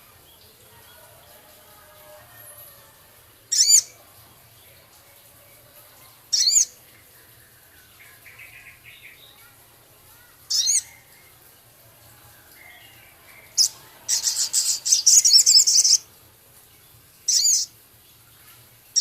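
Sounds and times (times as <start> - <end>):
faint soft bird chattering: 3.5 - 3.9, 6.3 - 6.8, 10.1 - 11.4, 17.3 - 17.7
songbird trilled calls: 3.5 - 3.9, 13.6 - 16.0, 17.3 - 17.7.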